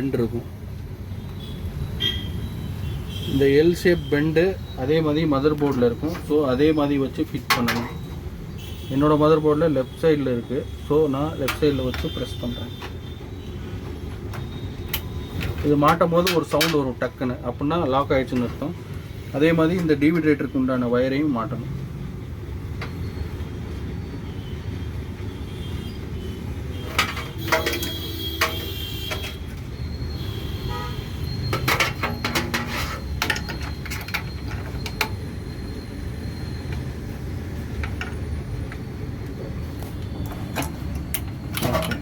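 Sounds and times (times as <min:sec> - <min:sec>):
street traffic rumble: 0:00.0 - 0:42.0
vehicle horn: 0:25.4 - 0:29.4, 0:30.2 - 0:31.3.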